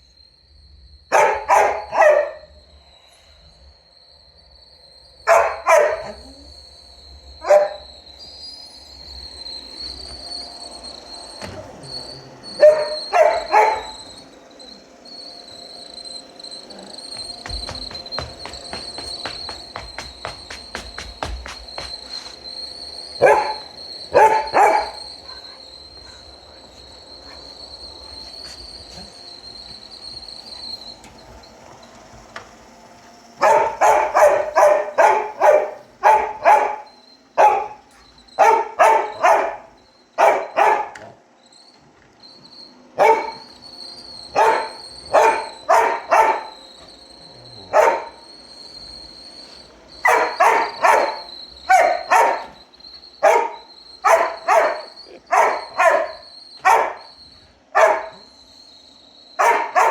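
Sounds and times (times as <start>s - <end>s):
robot vacuum whine: 0.0s - 59.9s
dog barking: 1.1s - 2.6s, 5.3s - 6.4s, 7.4s - 7.9s, 12.4s - 14.2s, 23.2s - 27.6s, 33.4s - 41.2s, 43.0s - 43.6s, 44.3s - 48.3s, 50.0s - 52.6s, 53.2s - 58.3s, 59.4s - 59.9s.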